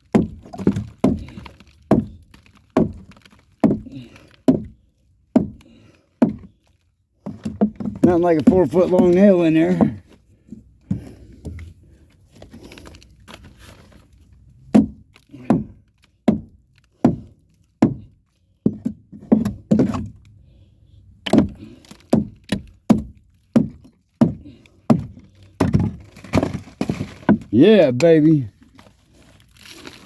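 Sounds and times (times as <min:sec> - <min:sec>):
hammer striking wood: 0:04.5 - 0:04.7, 0:05.3 - 0:05.6, 0:06.2 - 0:06.5, 0:14.7 - 0:20.1, 0:21.2 - 0:27.4.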